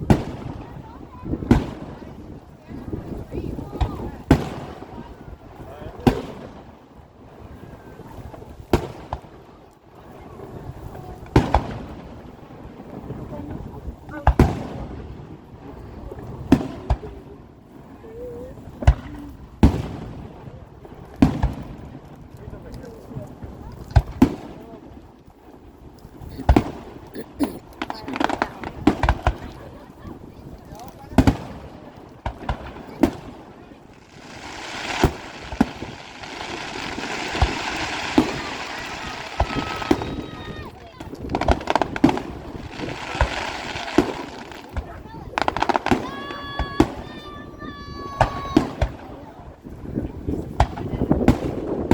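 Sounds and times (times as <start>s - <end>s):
fireworks booming: 0.0s - 2.0s, 26.2s - 29.6s, 31.1s - 47.3s
fireworks bursting with sharp bangs: 0.0s - 18.0s, 18.6s - 22.3s, 23.0s - 51.9s
crackling hiss: 25.9s - 29.6s, 30.8s - 47.0s.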